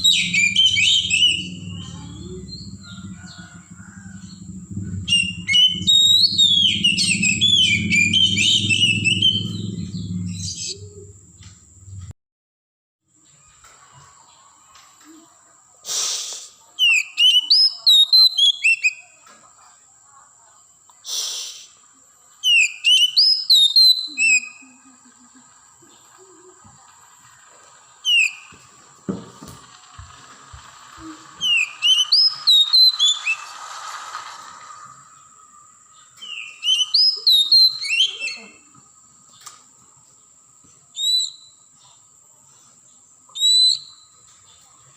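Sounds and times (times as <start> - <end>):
bird singing whistled phrases: 0.0 - 3.6, 5.0 - 11.0, 16.8 - 19.1, 22.4 - 24.7, 28.0 - 28.5, 31.4 - 33.5, 36.2 - 38.6, 41.0 - 41.6, 43.4 - 44.2
thin high steady tone: 0.0 - 11.2
low steady hum: 0.0 - 12.1.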